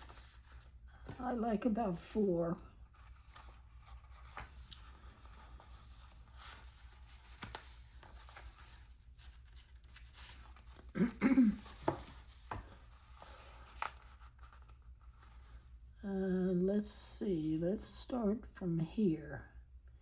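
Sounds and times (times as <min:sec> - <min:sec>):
paper handling: 0:02.8 - 0:15.6.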